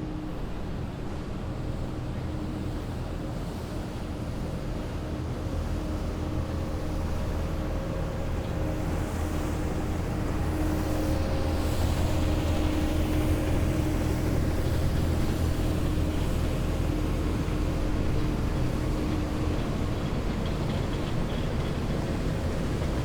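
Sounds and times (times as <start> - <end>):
heavy military vehicle engines: 6.0 - 23.0.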